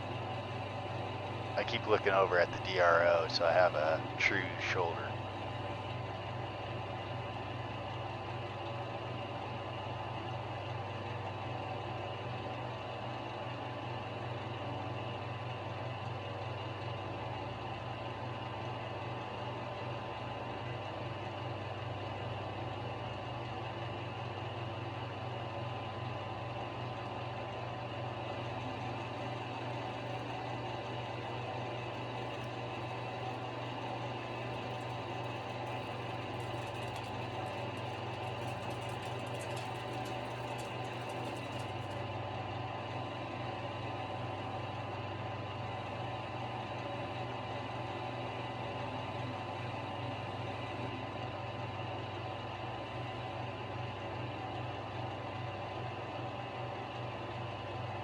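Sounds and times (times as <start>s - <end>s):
metal lathe running: 29.9s - 42.0s.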